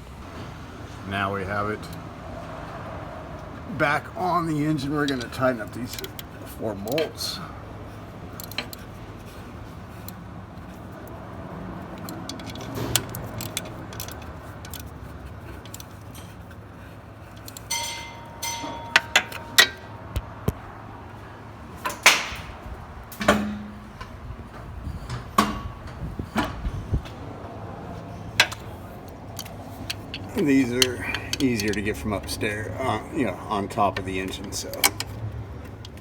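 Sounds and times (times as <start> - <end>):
ratchet metal clicks: 4.8 - 7.3, 8.3 - 9.0, 9.9 - 20.3, 28.3 - 32.5, 33.9 - 36.0.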